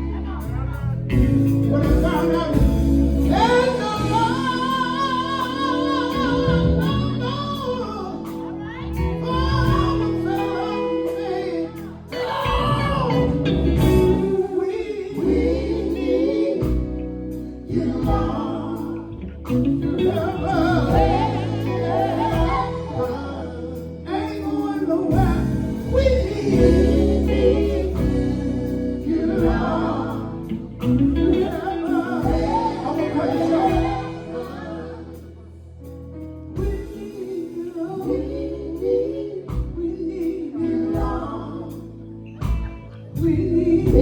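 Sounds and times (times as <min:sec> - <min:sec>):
gospel singing with band: 0:00.0 - 0:44.0.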